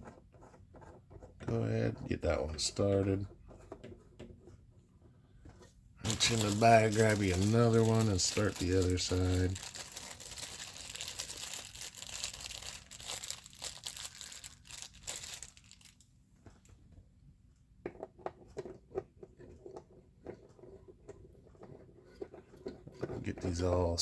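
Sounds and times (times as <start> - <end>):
plastic bag rustling: 6.0 - 16.0
small metal parts clicking: 6.0 - 16.0.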